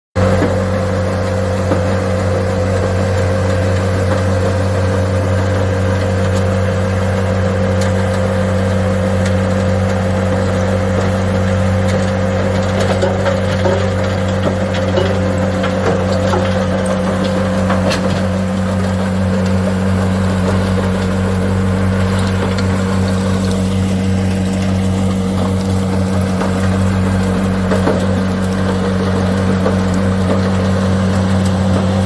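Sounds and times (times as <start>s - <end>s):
heavy diesel machinery drone: 0.2s - 32.0s.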